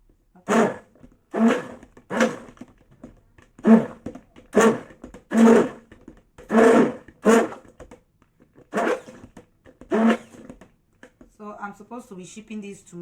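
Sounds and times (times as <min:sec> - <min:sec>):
stick blender pulses: 0:00.4 - 0:02.7, 0:03.6 - 0:07.9, 0:08.6 - 0:10.6.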